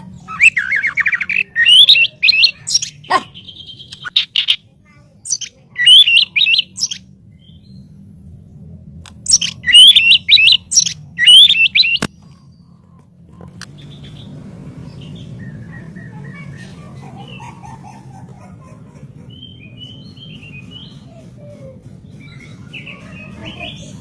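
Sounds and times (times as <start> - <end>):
bird singing whistled notes: 5.3 - 7.8, 9.3 - 12.1
low hum: 6.2 - 23.4.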